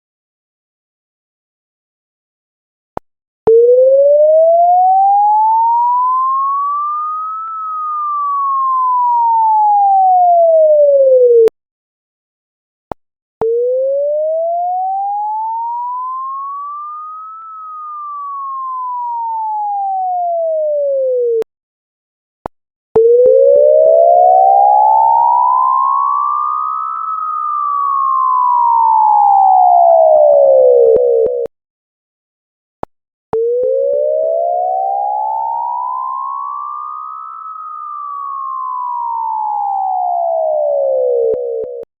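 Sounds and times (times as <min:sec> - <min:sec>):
electronic siren wail: 0:03.5 - 0:11.5, 0:13.4 - 0:21.4, 0:23.0 - 0:31.5, 0:33.4 - 0:41.9.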